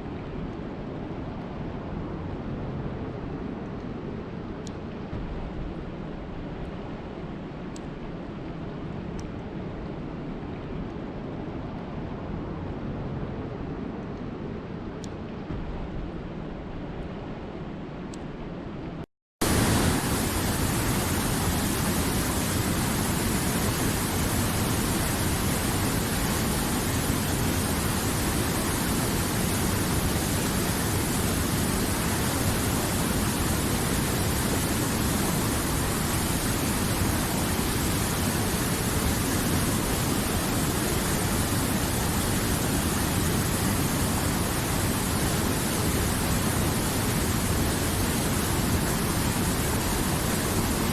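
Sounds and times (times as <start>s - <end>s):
water rushing: 19.4s - 50.9s.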